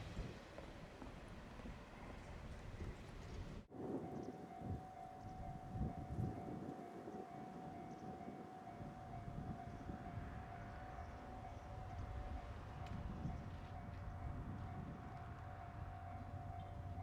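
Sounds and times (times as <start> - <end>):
level crossing warning bell: 3.8 - 17.0.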